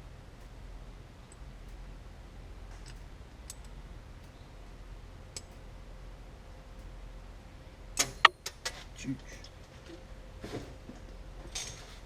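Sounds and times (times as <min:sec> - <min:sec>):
faint ticks: 0:00.0 - 0:12.0
metallic clicks and clinks: 0:08.0 - 0:12.0.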